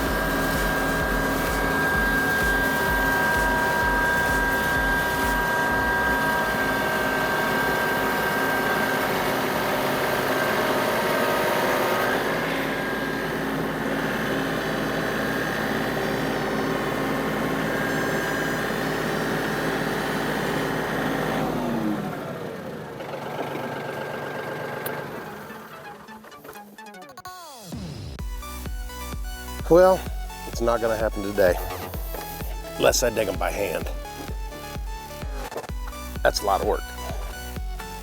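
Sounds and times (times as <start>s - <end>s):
tractor engine under load: 18.6s - 26.1s.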